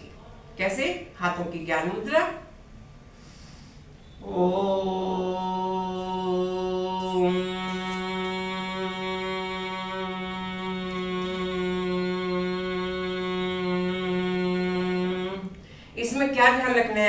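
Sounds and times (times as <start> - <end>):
woman chanting om: 4.1 - 17.0.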